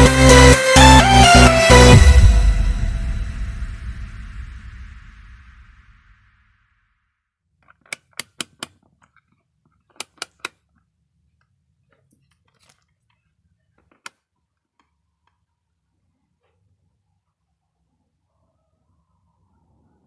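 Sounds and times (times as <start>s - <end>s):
sharp clicks: 7.6s - 8.9s, 9.9s - 10.6s.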